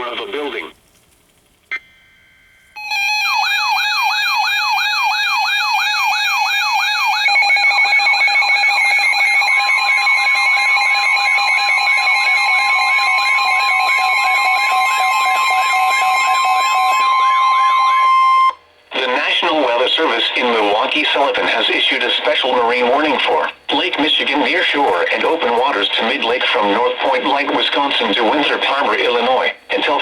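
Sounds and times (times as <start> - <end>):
steady warning alarm tone: 1.7 - 29.5
fast-warbling alert siren: 2.8 - 18.6.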